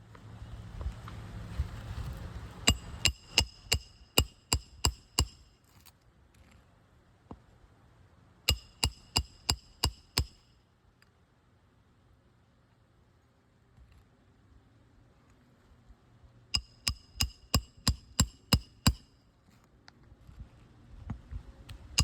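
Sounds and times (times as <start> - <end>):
hammer striking nails: 2.7 - 5.5, 8.5 - 10.4, 16.6 - 19.0.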